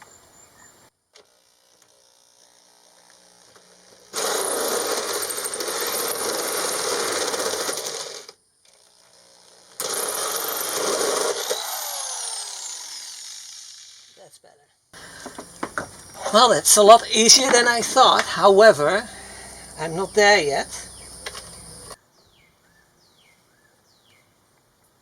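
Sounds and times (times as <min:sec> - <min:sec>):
electric drill cutting sheet metal: 0:01.2 - 0:14.2.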